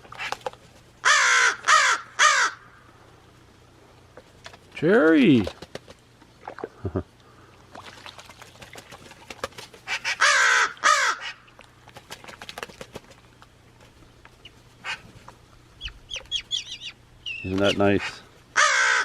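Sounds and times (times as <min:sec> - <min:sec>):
crow cawing: 0:01.0 - 0:02.8, 0:09.9 - 0:11.4, 0:18.6 - 0:19.0.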